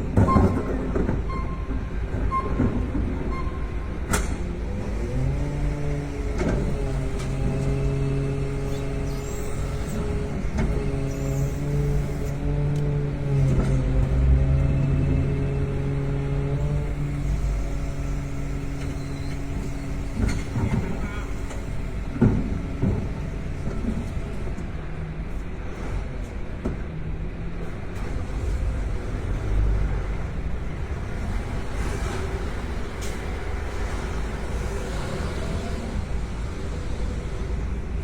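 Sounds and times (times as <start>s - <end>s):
car engine and road rumble: 0.0s - 38.0s.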